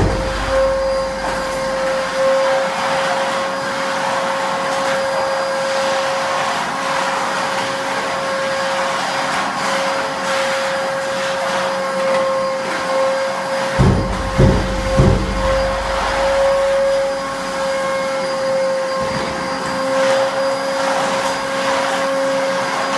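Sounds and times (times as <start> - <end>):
low thumps: 0.0 - 2.3, 13.8 - 17.4
vacuum cleaner whine: 7.4 - 13.8.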